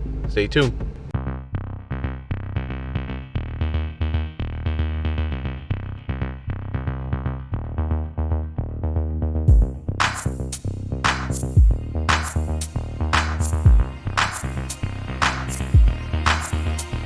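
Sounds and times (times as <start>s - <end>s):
synthesizer chords: 9.4s - 17.0s
drum-machine beat: 9.5s - 16.9s.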